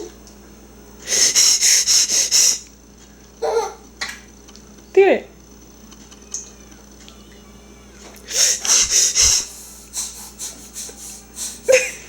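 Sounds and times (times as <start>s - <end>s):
baby blowing puffs: 1.1s - 2.6s, 8.3s - 11.8s.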